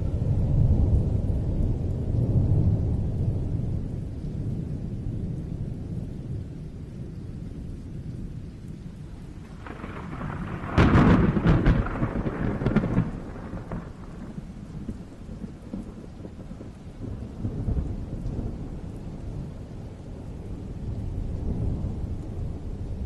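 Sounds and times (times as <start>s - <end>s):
low rumble of thunder: 0.0s - 23.0s
rain: 0.0s - 23.0s
sharp crackling thunderclap: 9.2s - 19.6s.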